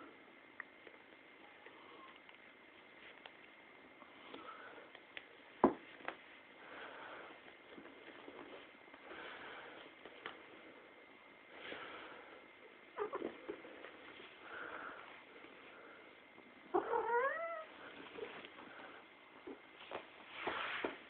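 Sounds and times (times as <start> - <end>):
cat meowing: 16.7 - 17.7.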